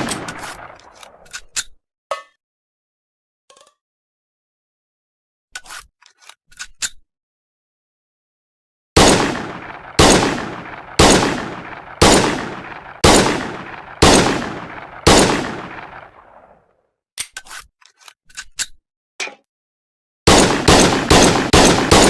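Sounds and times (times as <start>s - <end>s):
pistol shots echoing: 0.0s - 1.2s, 9.0s - 16.6s, 20.3s - 22.0s.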